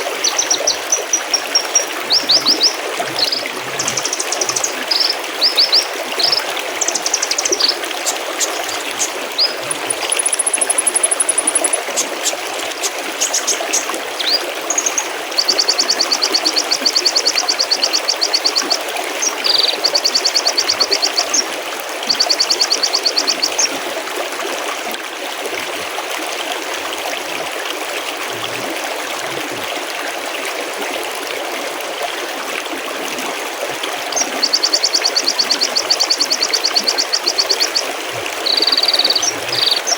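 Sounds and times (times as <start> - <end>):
small birds singing: 0.0 - 21.5, 22.1 - 23.8, 34.1 - 39.9
stream trickling and burbling: 0.0 - 39.9.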